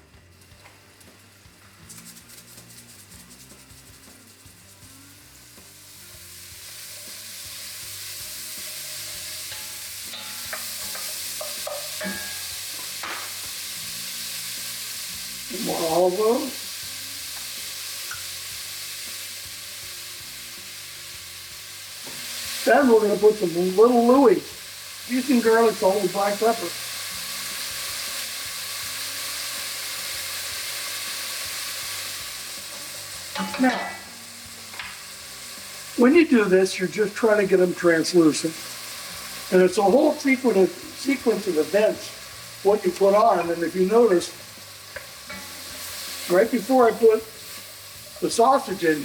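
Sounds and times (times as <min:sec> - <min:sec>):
vegetables sizzling in oil: 0:00.0 - 0:49.0
utensil knocking against pan: 0:33.4 - 0:34.1.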